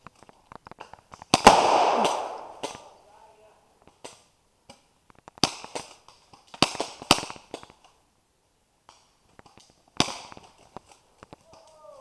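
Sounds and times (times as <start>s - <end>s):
airsoft gun shots: 1.3s - 2.9s.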